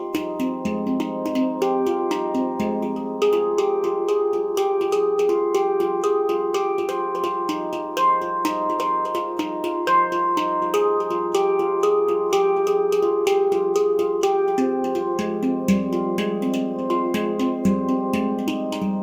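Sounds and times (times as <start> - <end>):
handpan played rhythmically: 0.0 - 19.0.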